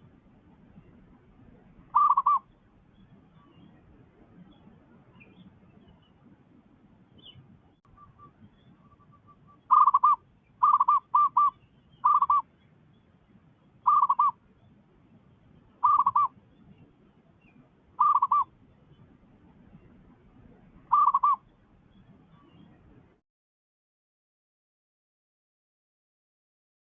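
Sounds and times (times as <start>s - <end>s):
dove cooing: 1.9s - 2.5s, 9.7s - 12.5s, 13.9s - 14.4s, 15.8s - 16.3s, 18.0s - 18.5s, 20.9s - 21.4s.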